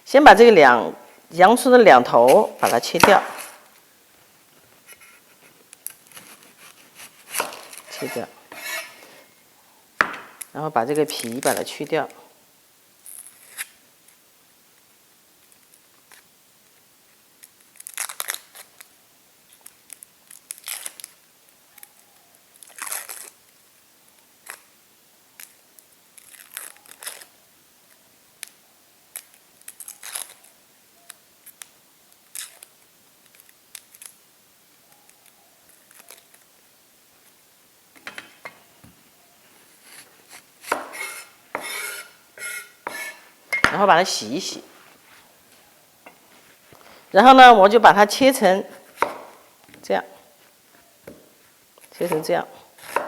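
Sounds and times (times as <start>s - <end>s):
onion skin crackling: 17.4s - 18.9s, 25.4s - 27.3s, 29.1s - 30.5s
sharp knocks with ring: 43.5s - 43.8s.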